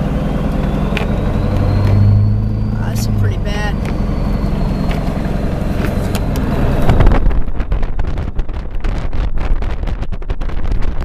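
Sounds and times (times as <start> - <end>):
pickup truck engine drone: 0.0 - 11.0
wind buffeting microphone: 3.3 - 11.0.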